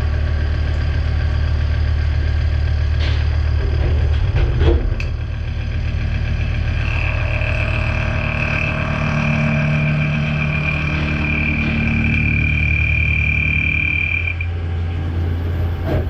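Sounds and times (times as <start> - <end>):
high steady whine: 0.0 - 16.0
machine hum: 0.0 - 16.0.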